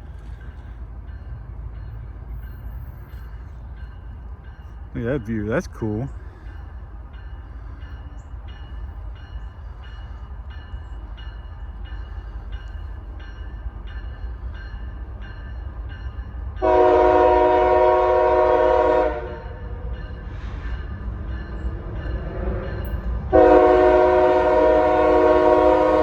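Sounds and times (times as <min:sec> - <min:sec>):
railroad crossing bell dinging: 0:00.0 - 0:26.0
locomotive air horn: 0:16.6 - 0:19.6, 0:23.3 - 0:26.0.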